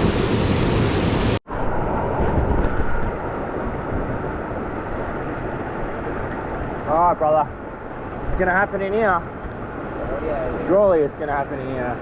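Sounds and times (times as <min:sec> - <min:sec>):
wind on the microphone: 0:00.0 - 0:06.9.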